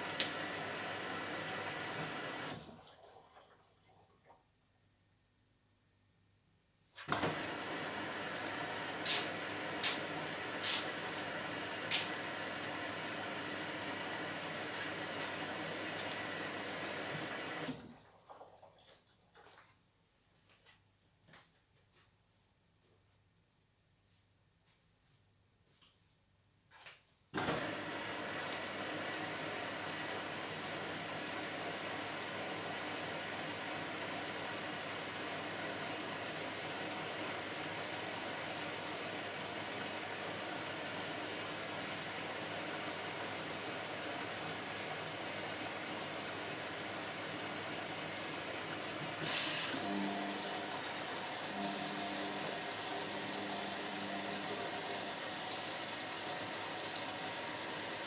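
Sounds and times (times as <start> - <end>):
water rushing into washing machine: 0.0 - 4.4, 7.0 - 19.0, 27.4 - 58.0
washing machine low hum: 27.4 - 58.0.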